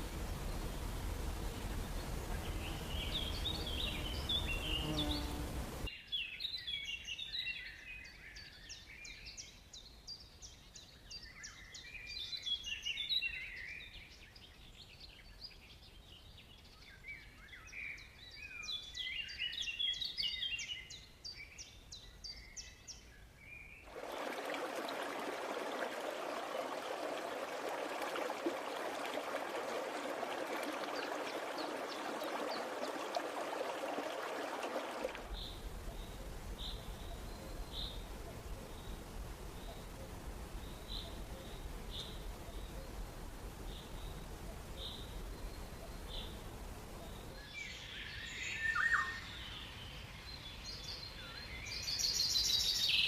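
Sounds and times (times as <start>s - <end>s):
running water: 0.0s - 5.9s, 23.9s - 47.4s
bird chirping: 1.6s - 5.4s.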